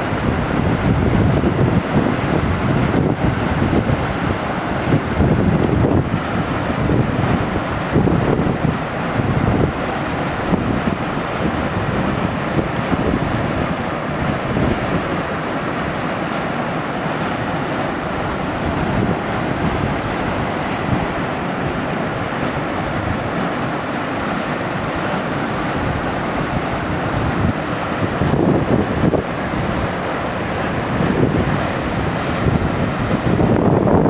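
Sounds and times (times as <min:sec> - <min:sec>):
waterfall roaring: 0:00.0 - 0:34.0.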